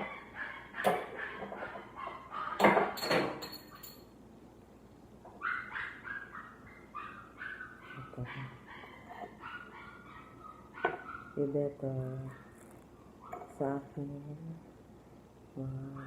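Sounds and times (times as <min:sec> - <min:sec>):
dog yipping: 0:00.0 - 0:02.7, 0:05.4 - 0:11.4.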